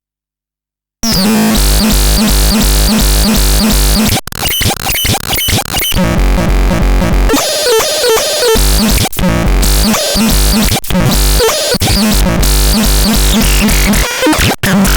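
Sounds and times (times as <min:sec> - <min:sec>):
synthesizer bass pulse: 0:01.0 - 0:04.2, 0:05.5 - 0:07.5, 0:08.5 - 0:13.9
stuttering noisy synth sounds: 0:01.0 - 0:14.9.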